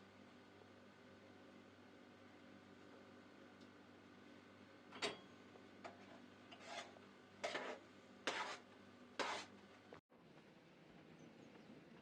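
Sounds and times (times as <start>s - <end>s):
rasping scraping strokes: 6.5s - 9.5s.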